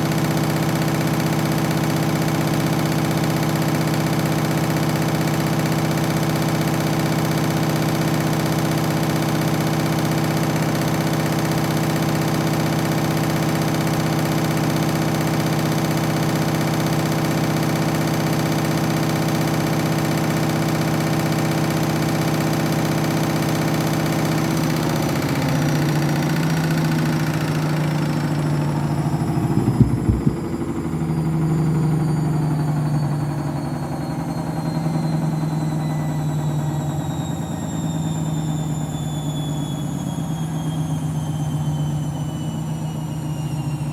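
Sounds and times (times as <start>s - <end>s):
washing machine spinning: 0.0s - 43.9s
knocks: 29.4s - 30.6s.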